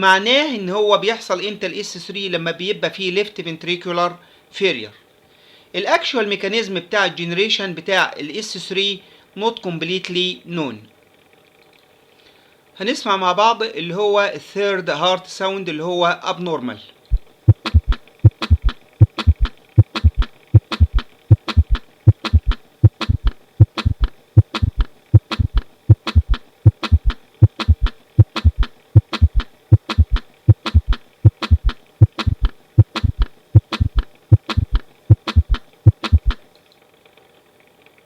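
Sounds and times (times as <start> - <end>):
heartbeat gallop rhythm thumps: 17.1 - 36.4.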